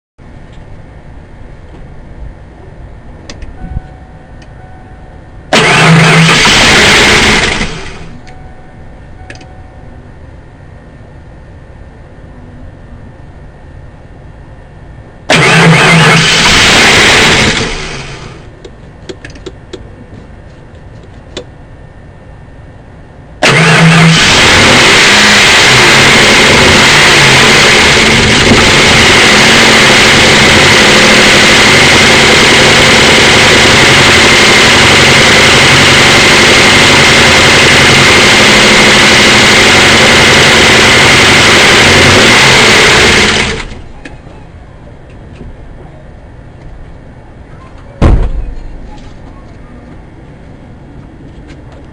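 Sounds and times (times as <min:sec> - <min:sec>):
engine cranking on starter: 0:05.5 - 0:08.1, 0:15.3 - 0:18.5, 0:23.4 - 0:43.9.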